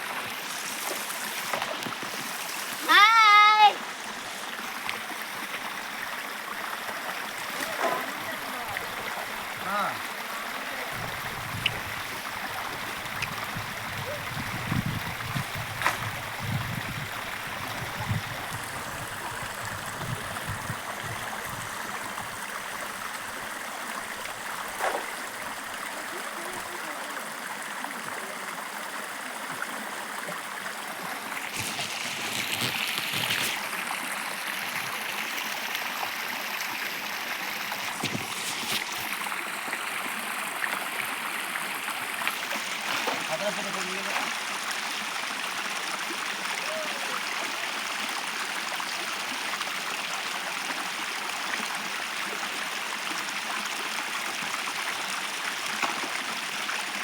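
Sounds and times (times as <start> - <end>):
stream water flowing: 0.0 - 57.0.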